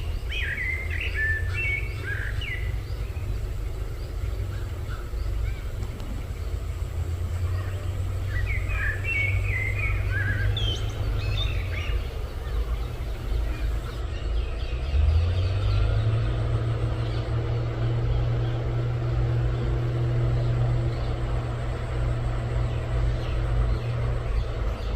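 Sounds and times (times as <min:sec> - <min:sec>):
bird chirps: 0:00.0 - 0:15.8
low motor-like hum: 0:00.0 - 0:24.9.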